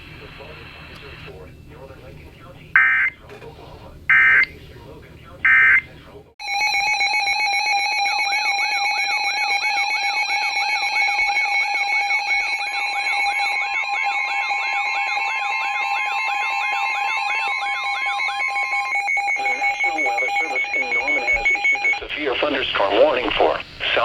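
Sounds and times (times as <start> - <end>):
buzzy electronic alarm tone: 6.4 - 22.6.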